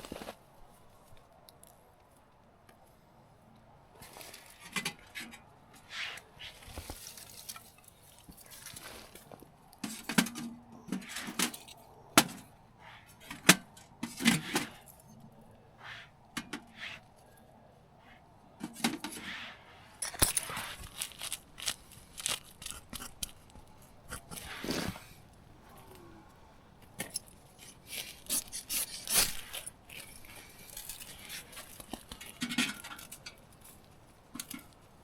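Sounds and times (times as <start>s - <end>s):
camping gear clicks and knocks: 3.6s - 15.4s, 18.5s - 25.4s, 26.8s - 35.0s.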